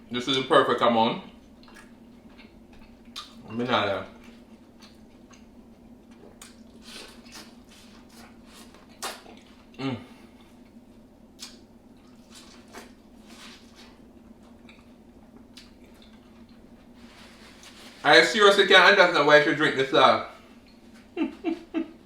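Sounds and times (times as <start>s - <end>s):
wet chewing and smacking: 1.3s - 3.5s, 4.2s - 9.8s, 11.4s - 16.8s.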